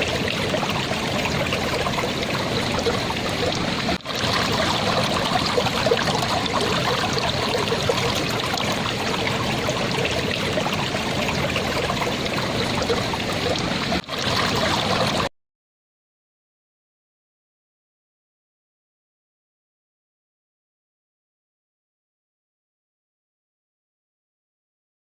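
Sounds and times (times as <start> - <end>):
stream babbling over stones: 0.0 - 15.3.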